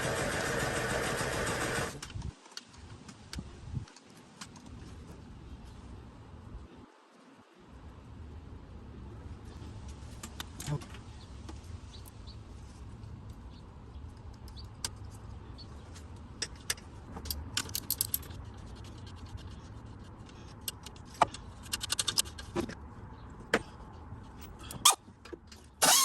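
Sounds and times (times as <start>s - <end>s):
metal tools clicking and clinking: 16.4s - 18.4s.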